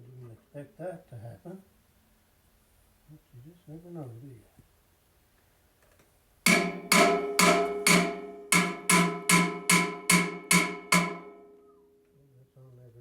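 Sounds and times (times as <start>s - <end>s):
hammer striking metal: 6.5s - 11.8s.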